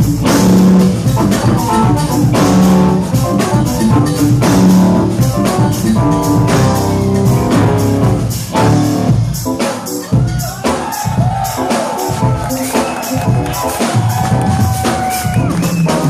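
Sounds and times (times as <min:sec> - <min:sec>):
electric guitar: 0:00.0 - 0:10.1
bass notes: 0:00.0 - 0:10.5
drum kit: 0:00.0 - 0:16.0
jazz fusion band playing: 0:00.0 - 0:16.0.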